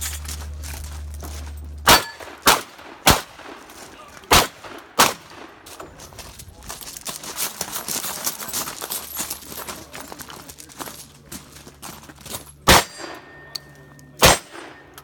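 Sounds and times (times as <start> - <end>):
shotgun shots: 1.8 - 5.7, 12.6 - 13.4, 14.2 - 15.0.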